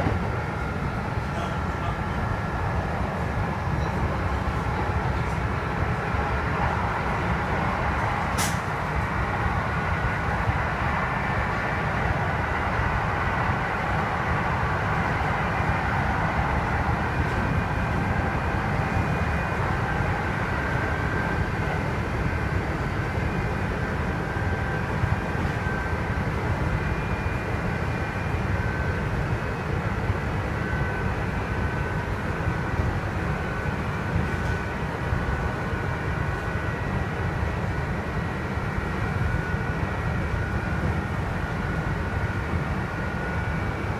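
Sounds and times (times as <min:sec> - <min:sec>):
train low rumble: 0:00.0 - 0:43.9
faint high whining tones: 0:11.0 - 0:43.9.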